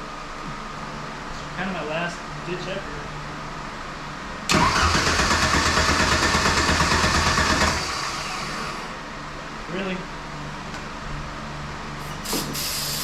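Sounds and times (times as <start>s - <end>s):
car engine cranking on starter: 4.5s - 7.8s.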